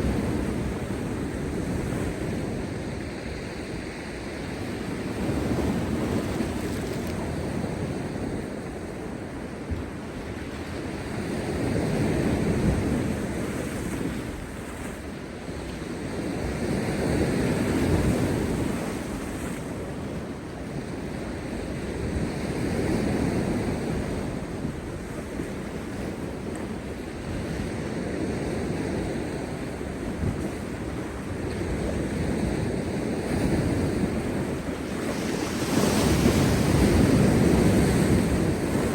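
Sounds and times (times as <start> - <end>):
sea waves crashing on rocks: 29.1 - 38.9.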